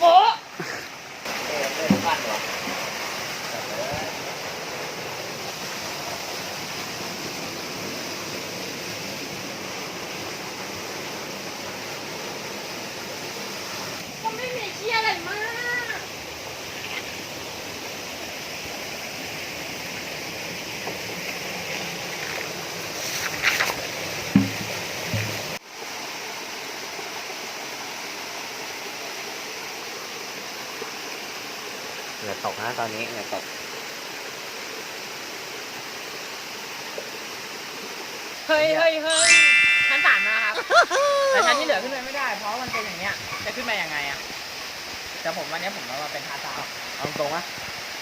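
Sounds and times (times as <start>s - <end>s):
waterfall rushing: 0.8s - 20.8s.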